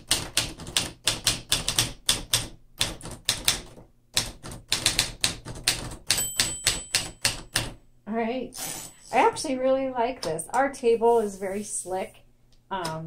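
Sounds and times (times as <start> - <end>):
manual typewriter typing: 0.0 - 7.8.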